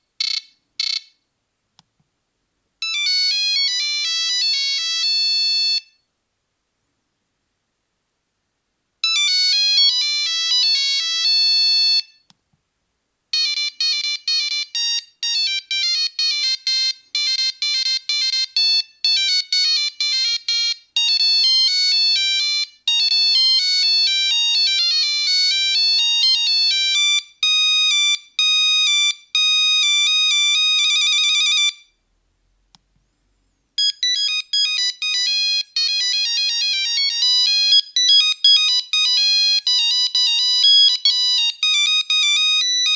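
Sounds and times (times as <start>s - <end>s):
monophonic phone ringtone beeping: 2.8s - 6.0s, 13.4s - 31.9s, 33.8s - 42.9s.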